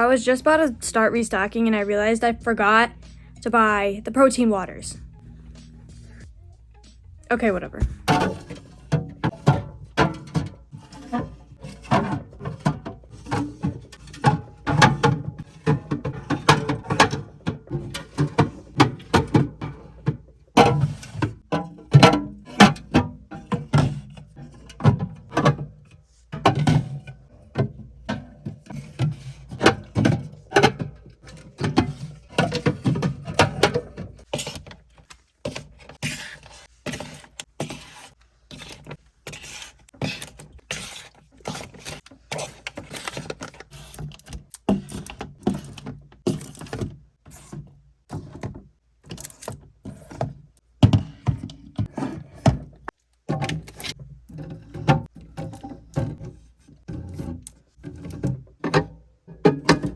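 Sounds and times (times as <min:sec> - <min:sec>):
short thunks: 0:07.7 - 0:08.5.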